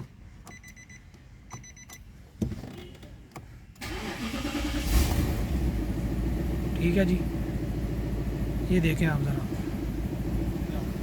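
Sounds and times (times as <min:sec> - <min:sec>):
dashboard warning chime beeping: 0:00.4 - 0:02.2
car engine cranking and starting: 0:03.8 - 0:11.0.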